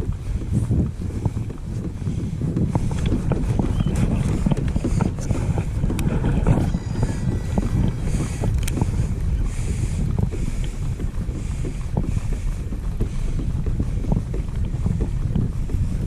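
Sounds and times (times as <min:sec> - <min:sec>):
wind buffeting microphone: 0:00.0 - 0:16.0
faint clicks and taps: 0:08.3 - 0:09.0.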